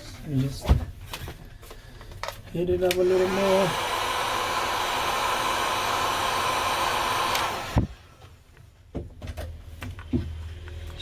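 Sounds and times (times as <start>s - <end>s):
heat gun blowing with whine: 2.9s - 8.2s.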